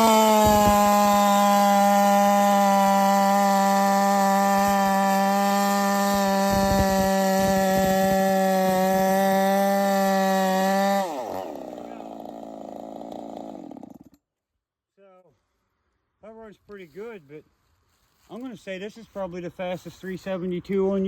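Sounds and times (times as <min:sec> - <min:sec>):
chainsaw at full throttle cutting: 0:00.0 - 0:14.2.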